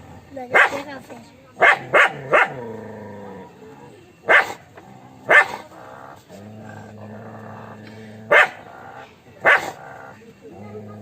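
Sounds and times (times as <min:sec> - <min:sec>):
dog barking: 0:00.5 - 0:01.0, 0:01.6 - 0:02.7, 0:04.2 - 0:04.7, 0:05.3 - 0:05.7, 0:08.3 - 0:10.0.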